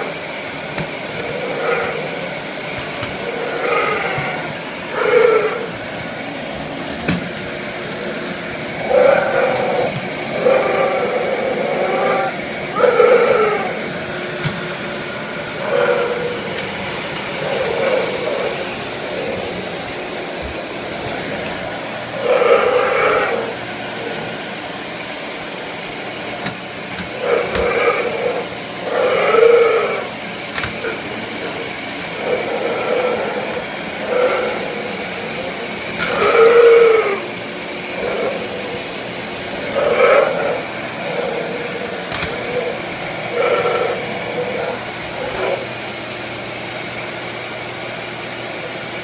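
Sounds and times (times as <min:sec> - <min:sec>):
vacuum cleaner drone: 0:00.0 - 0:49.0
dog growling playfully: 0:01.0 - 0:13.9, 0:15.5 - 0:24.4, 0:27.1 - 0:30.1, 0:30.7 - 0:45.8.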